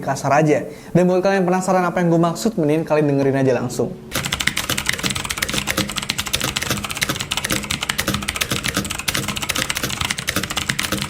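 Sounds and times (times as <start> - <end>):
fast typing on mechanical keyboard: 4.1 - 11.0.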